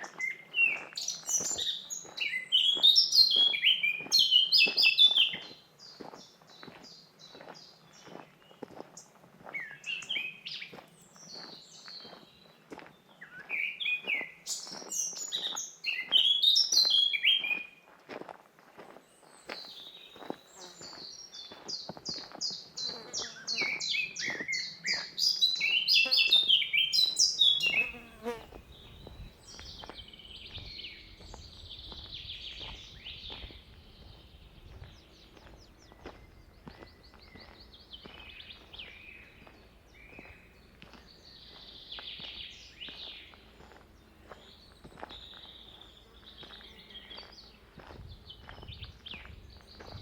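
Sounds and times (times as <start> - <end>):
songbird fast high song: 19.5 - 43.8
bird chirps and trills: 22.2 - 31.0.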